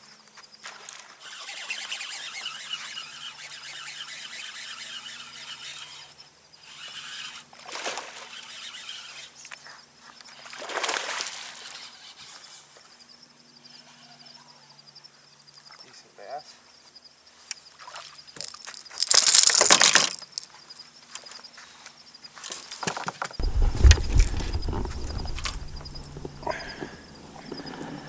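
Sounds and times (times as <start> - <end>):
birds chirping in chorus: 23.4 - 28.0.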